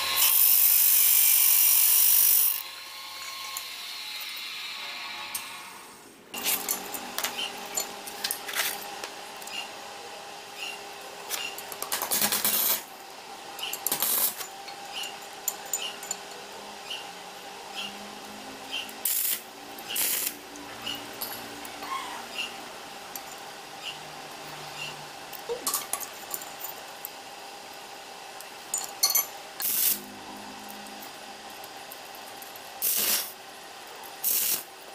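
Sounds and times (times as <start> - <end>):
metal clinks: 13.6 - 16.4.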